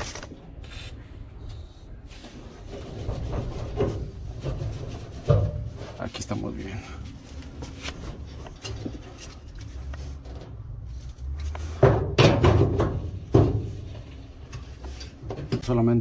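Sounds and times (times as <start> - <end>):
dryer parts knocking and clattering: 2.3 - 10.7, 11.6 - 16.0.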